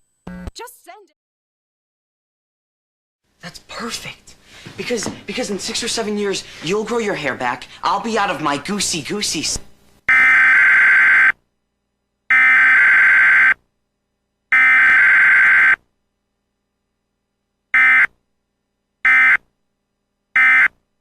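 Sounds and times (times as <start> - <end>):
warbling data tone screech: 12.3 - 13.6, 14.5 - 15.8.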